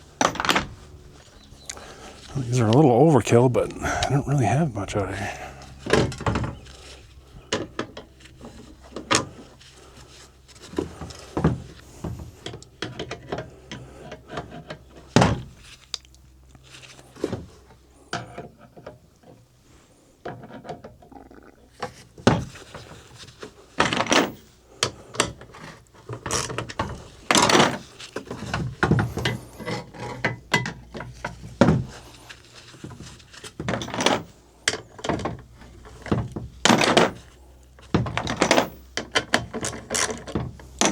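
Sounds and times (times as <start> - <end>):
hand tools clinking on metal: 33.7 - 34.4, 36.6 - 37.4.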